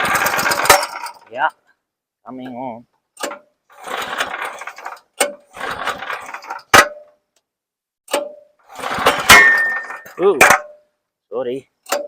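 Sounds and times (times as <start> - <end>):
small gasoline engine starting: 0.0 - 1.2, 3.2 - 6.7, 8.7 - 10.2.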